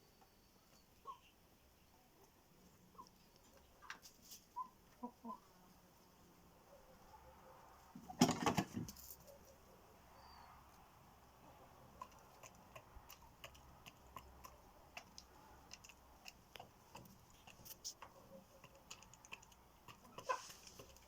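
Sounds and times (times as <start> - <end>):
faint clicking and tapping: 11.9 - 21.0.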